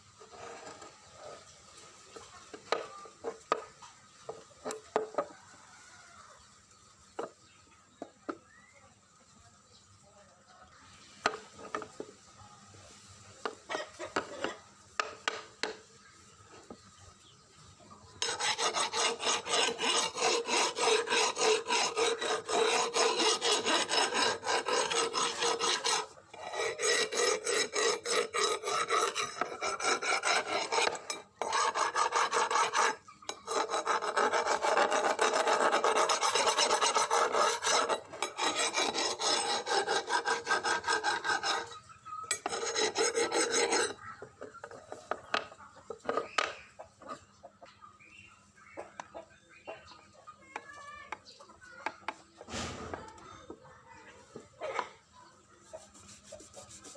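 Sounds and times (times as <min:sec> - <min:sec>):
fast rasping strokes: 0:18.2 - 0:44.0, 0:55.6 - 0:56.9.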